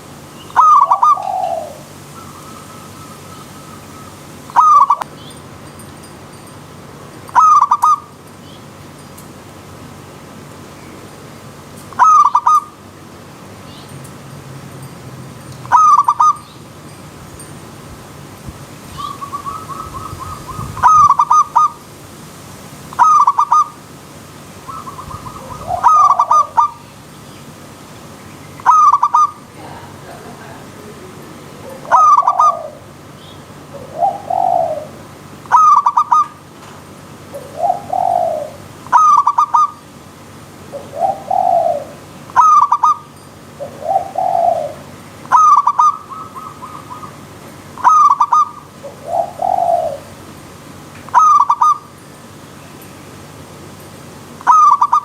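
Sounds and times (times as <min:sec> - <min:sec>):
dove cooing phrase: 0:00.0 - 0:05.0, 0:07.3 - 0:08.1, 0:11.9 - 0:12.9, 0:15.6 - 0:16.4, 0:18.9 - 0:21.8, 0:22.9 - 0:23.9, 0:24.6 - 0:27.0, 0:28.6 - 0:36.5, 0:37.2 - 0:50.2, 0:51.1 - 0:51.9, 0:54.4 - 0:55.0
lower dove coos: 0:00.0 - 0:05.1, 0:07.3 - 0:08.1, 0:11.9 - 0:12.8, 0:15.6 - 0:16.4, 0:18.9 - 0:21.8, 0:22.9 - 0:23.8, 0:24.6 - 0:26.9, 0:28.6 - 0:36.5, 0:37.2 - 0:39.8, 0:40.6 - 0:50.2, 0:51.1 - 0:51.9, 0:54.4 - 0:55.0.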